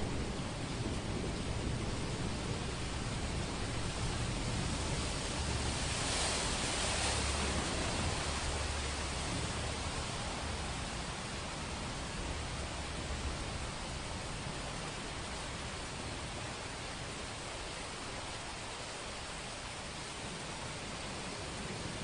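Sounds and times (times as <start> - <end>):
distant thunder rumbling: 0.0 - 5.7
heavy rain hissing: 0.0 - 22.0.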